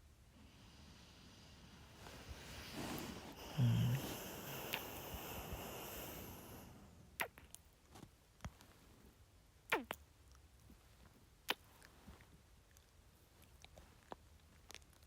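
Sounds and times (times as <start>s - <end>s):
long exhaled breath: 0.4s - 6.8s
wet kisses and lip smacks: 7.2s - 7.6s, 9.7s - 10.1s, 11.4s - 12.0s.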